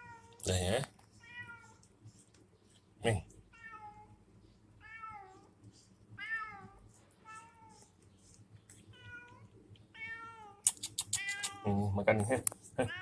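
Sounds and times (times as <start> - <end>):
cat meowing: 8.9 - 11.8.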